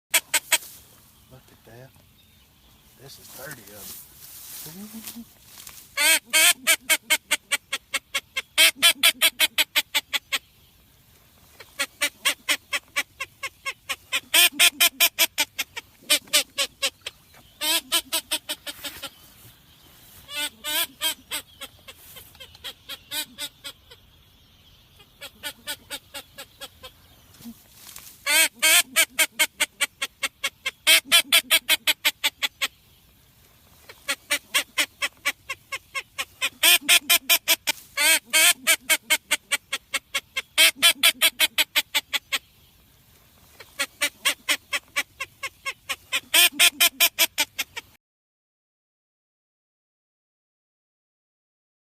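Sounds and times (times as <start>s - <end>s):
duck quacking rapidly: 0.1s - 0.7s, 6.0s - 10.4s, 11.6s - 19.1s, 20.3s - 24.0s, 28.2s - 32.7s, 33.9s - 42.4s, 43.6s - 48.0s.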